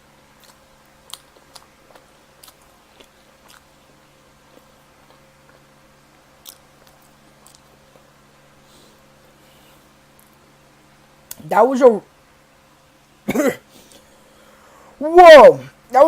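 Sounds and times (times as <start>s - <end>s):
faint steady hum: 0.0s - 16.0s
chewing with wet mouth clicks: 0.4s - 5.6s, 6.4s - 8.1s.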